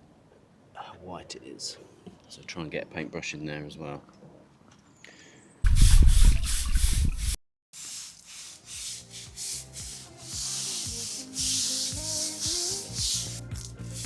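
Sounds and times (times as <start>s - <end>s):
brush scraping on concrete: 5.7s - 14.0s
background music with simple melody: 8.8s - 14.0s.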